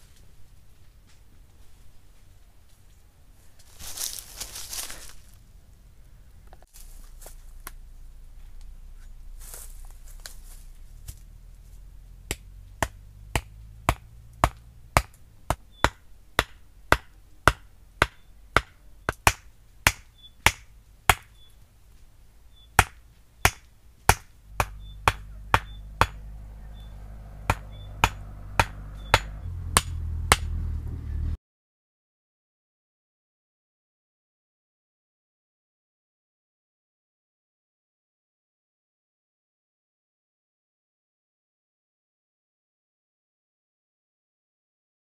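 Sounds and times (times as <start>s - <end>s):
low rumble: 5.2s - 19.0s, 23.8s - 31.4s
hand tool striking blows: 12.3s - 21.5s, 22.8s - 30.6s.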